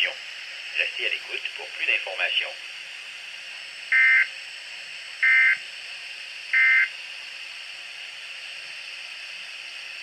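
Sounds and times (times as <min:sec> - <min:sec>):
radio hiss: 0:00.0 - 0:05.6.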